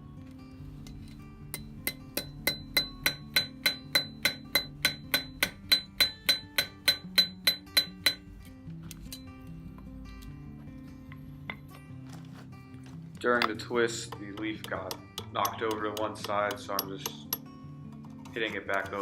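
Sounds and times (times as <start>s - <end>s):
background music: 0.0s - 19.0s
hammer striking steel on anvil: 1.5s - 8.3s, 14.2s - 17.6s.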